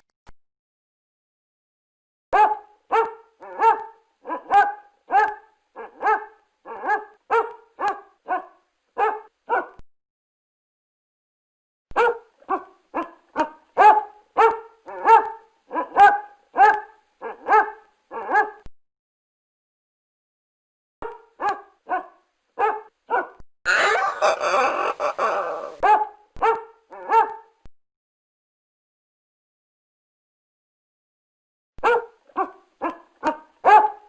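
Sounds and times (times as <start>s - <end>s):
dog barking: 2.4s - 9.8s, 12.0s - 18.7s, 21.0s - 27.6s, 31.8s - 34.0s.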